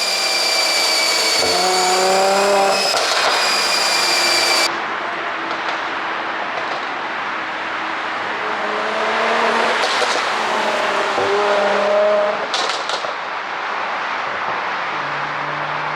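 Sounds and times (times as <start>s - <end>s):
car engine revving: 0.0s - 4.7s, 8.1s - 12.6s
exhaust crackle: 0.0s - 4.7s.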